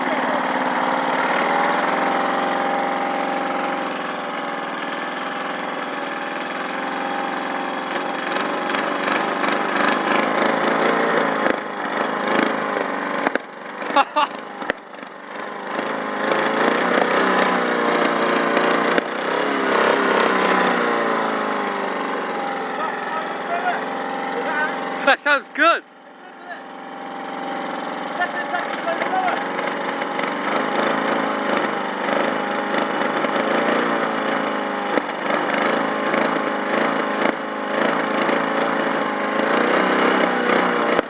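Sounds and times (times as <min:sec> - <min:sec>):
small lawn mower engine running: 0:00.0 - 0:41.0
engine backfire pops and crackles: 0:08.0 - 0:20.6, 0:27.9 - 0:41.0.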